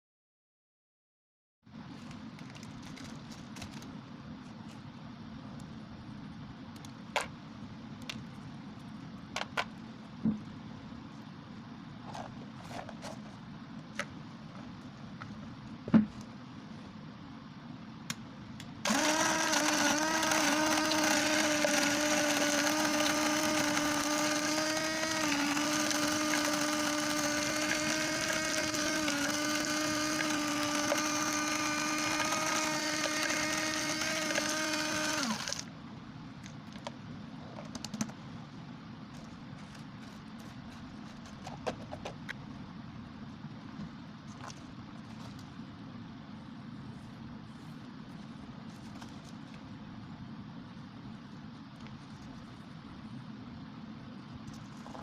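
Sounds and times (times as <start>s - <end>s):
mixer grinder motor whine: 18.8s - 35.7s.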